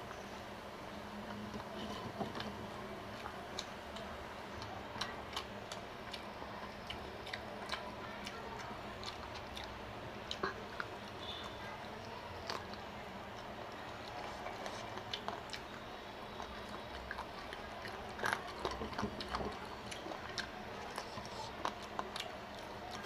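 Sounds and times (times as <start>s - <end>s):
person chewing food: 1.2s - 23.0s.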